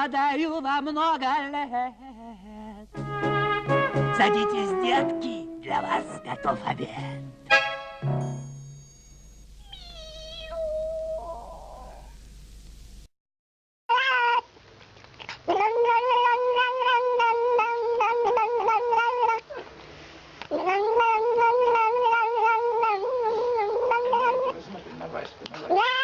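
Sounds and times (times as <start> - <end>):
cat yowling: 9.6 - 12.2, 13.9 - 14.5, 15.5 - 19.5, 20.5 - 24.6, 25.6 - 26.0.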